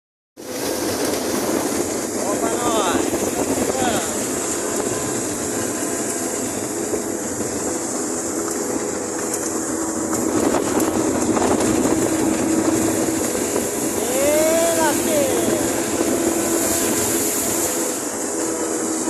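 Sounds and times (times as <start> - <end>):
moving vehicle running: 0.4 - 19.0
steady hum: 11.3 - 18.7.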